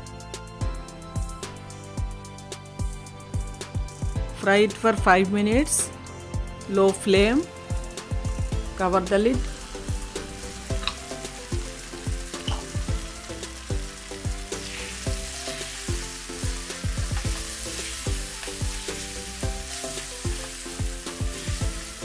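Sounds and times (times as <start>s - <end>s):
music with thumping beat: 0.0s - 4.4s, 5.0s - 22.0s
chicken sizzling in oil: 7.7s - 22.0s.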